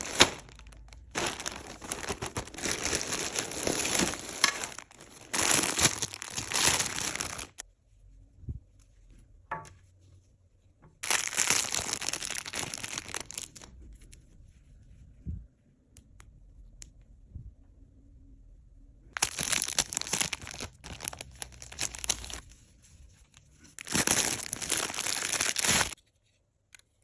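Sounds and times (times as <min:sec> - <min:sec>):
plastic packaging crinkling: 0:00.0 - 0:07.6, 0:11.0 - 0:13.8, 0:19.2 - 0:22.6, 0:23.7 - 0:26.0.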